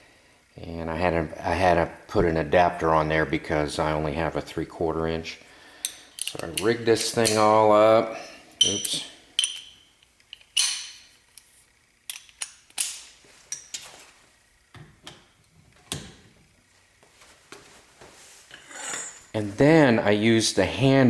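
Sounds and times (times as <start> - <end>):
steel socket tools clinking: 5.8 - 7.6, 8.6 - 11.1, 12.1 - 13.8.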